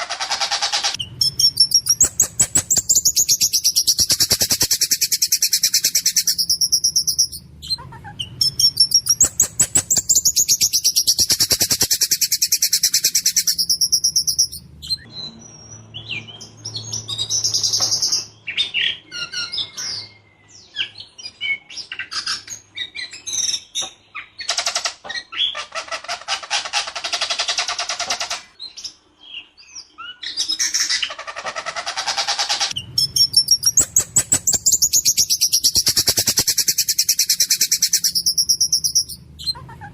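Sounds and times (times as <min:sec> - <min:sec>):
songbird singing: 0:00.9 - 0:24.6, 0:32.6 - 0:39.9.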